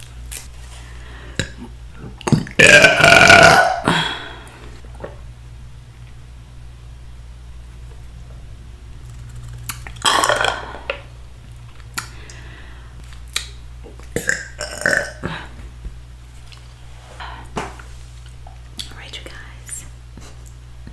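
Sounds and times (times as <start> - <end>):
person burping: 1.4 - 4.5, 10.0 - 11.0, 14.1 - 15.5
wet mouth clicks and smacks: 13.0 - 14.2, 18.7 - 19.0.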